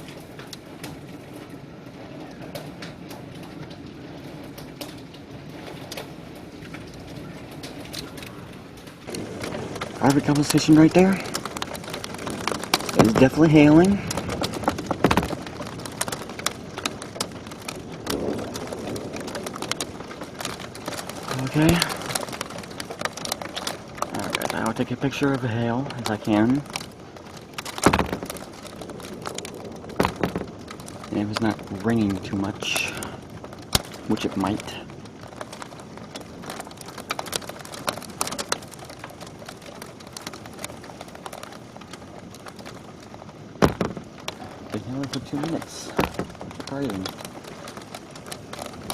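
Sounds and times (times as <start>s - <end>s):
hailstones clicking on surfaces: 0.0s - 48.9s
rain hiss: 0.0s - 48.9s
steady hiss: 17.8s - 22.8s, 27.8s - 35.2s, 41.6s - 48.9s.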